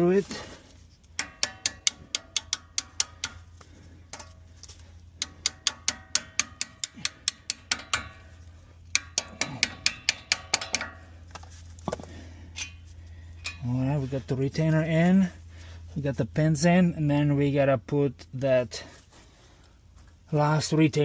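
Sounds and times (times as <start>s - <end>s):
metal tapping on metal: 1.0s - 11.5s, 12.5s - 13.8s.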